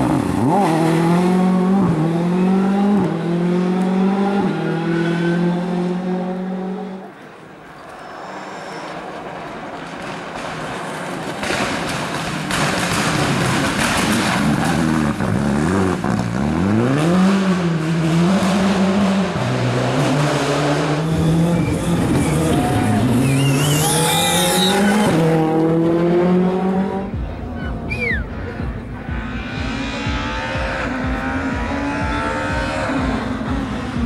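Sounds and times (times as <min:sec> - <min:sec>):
rally car engine revving: 0:00.0 - 0:07.2, 0:08.3 - 0:34.0
tires squealing: 0:07.7 - 0:15.8, 0:20.9 - 0:25.5.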